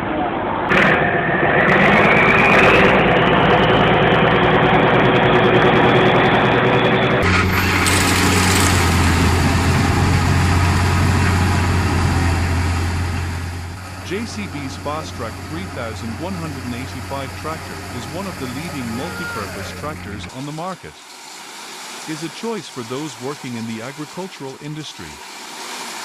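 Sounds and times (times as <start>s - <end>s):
engine low drone: 0.0s - 20.4s
heavy engine whining: 0.7s - 21.2s, 21.8s - 26.0s.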